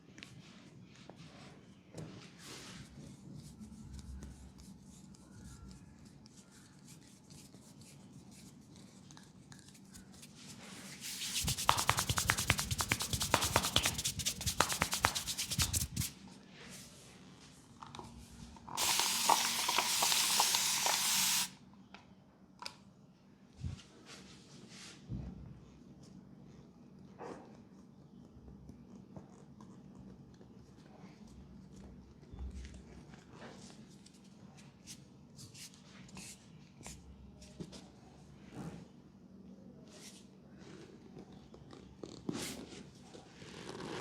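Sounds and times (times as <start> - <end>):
hands rubbing over skin: 10.2 - 16.2, 18.8 - 21.5.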